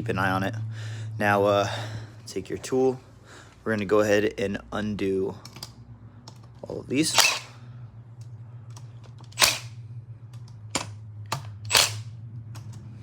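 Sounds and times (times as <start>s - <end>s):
steady low hum: 0.0s - 13.0s
hand tool clicks on bolts: 7.1s - 7.5s, 9.2s - 9.7s, 10.8s - 12.0s.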